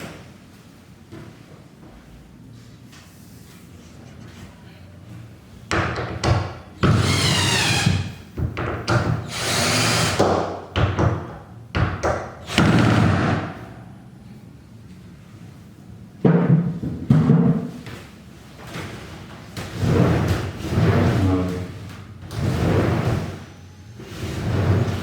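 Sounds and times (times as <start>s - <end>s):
power drill whining: 6.8s - 8.2s, 9.3s - 10.3s.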